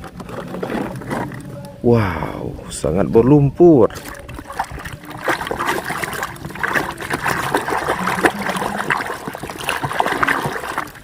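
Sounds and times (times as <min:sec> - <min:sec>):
water trickling and splashing: 0:03.7 - 0:11.0.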